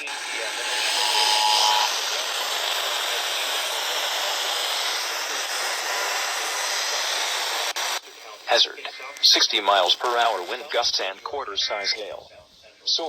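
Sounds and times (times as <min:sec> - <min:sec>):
radio static hiss: 0:06.9 - 0:13.0.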